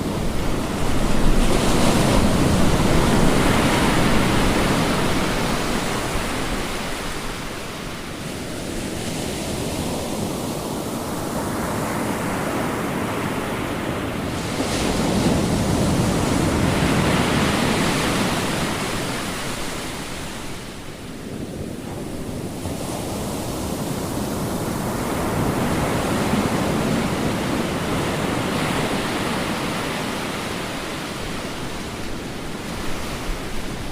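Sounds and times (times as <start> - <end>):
ocean waves washing on shore: 0.0 - 33.9.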